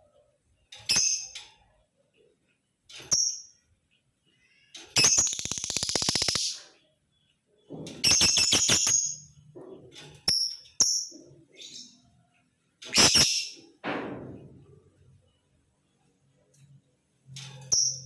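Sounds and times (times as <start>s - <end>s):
lovebird chirping and chattering: 5.0s - 6.7s, 8.0s - 9.3s, 12.9s - 13.6s.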